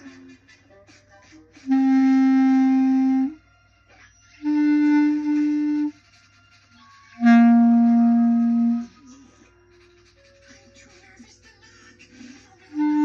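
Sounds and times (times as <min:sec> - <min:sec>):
clarinet long held notes: 0:01.7 - 0:03.4, 0:04.4 - 0:06.0, 0:07.2 - 0:08.9, 0:12.8 - 0:13.0.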